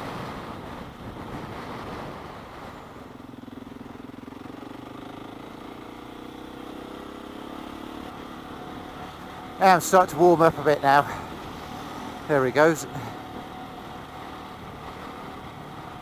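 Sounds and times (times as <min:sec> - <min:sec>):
wind noise on microphone: 0:00.0 - 0:03.1
motorcycle engine running: 0:00.1 - 0:16.0.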